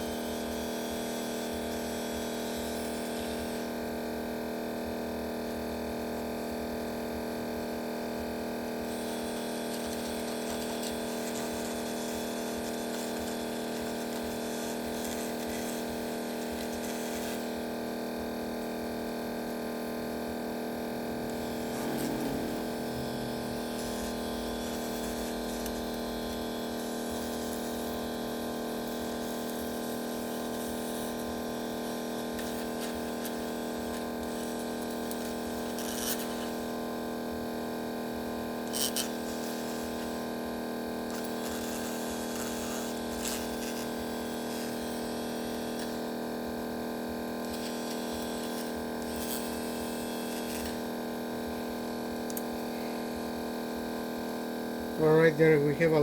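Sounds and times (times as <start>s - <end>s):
small electric motor humming: 0.0s - 56.0s
hiss: 8.9s - 17.6s, 41.1s - 46.0s, 47.5s - 50.8s.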